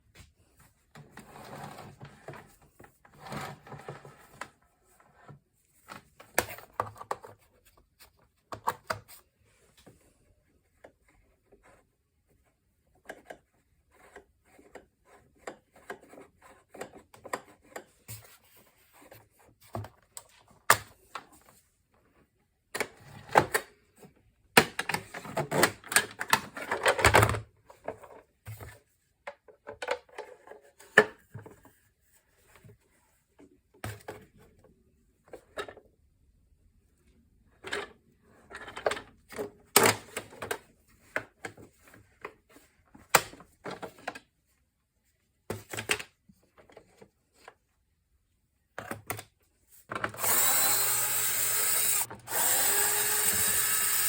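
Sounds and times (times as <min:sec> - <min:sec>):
vacuum cleaner parts clicking: 0:49.9 - 0:54.0.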